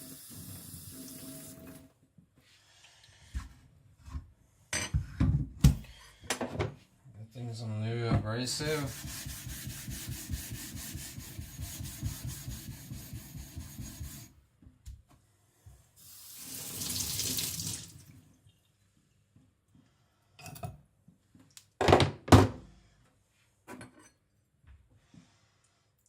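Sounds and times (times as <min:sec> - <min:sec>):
scrubbing on wet whetstone: 0:08.8 - 0:14.3
running water: 0:16.0 - 0:18.2.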